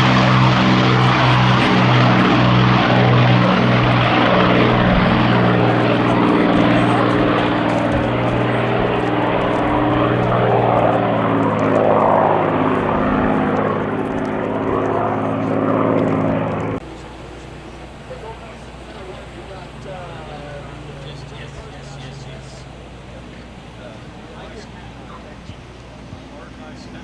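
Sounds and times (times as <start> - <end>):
propeller plane engine drone: 0.0 - 27.0.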